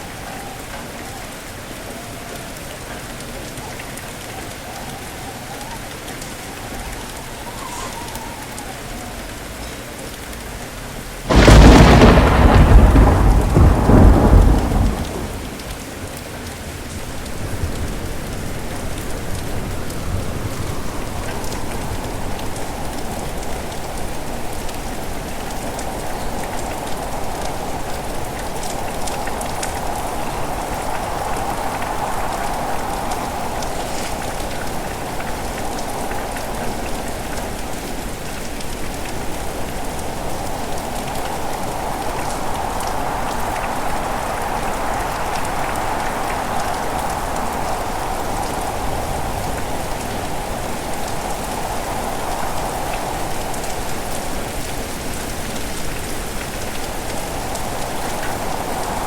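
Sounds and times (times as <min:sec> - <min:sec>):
heavy rain: 0:00.0 - 0:59.0
strong wind rushing: 0:11.3 - 0:16.1, 0:16.8 - 0:59.0
low rumble of thunder: 0:11.3 - 0:54.6.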